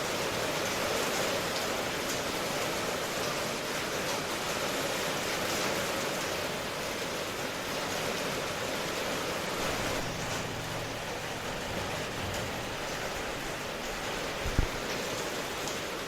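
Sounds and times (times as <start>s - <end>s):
rain falling: 0.0s - 16.0s.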